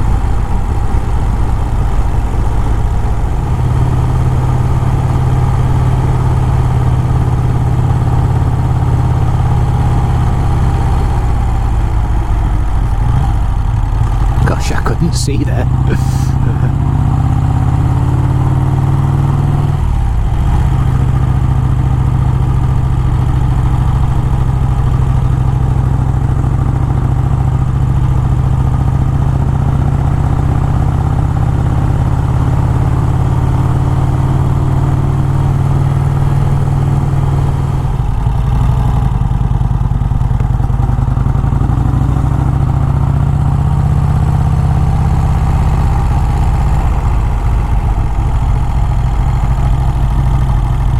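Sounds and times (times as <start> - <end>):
motorcycle engine running: 0.0 - 14.5, 15.7 - 50.9.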